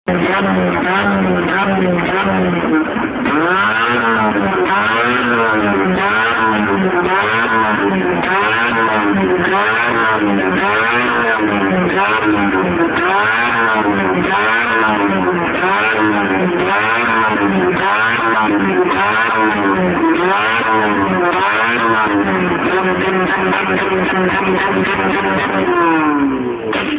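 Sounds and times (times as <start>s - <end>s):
car engine revving: 0.1s - 26.9s.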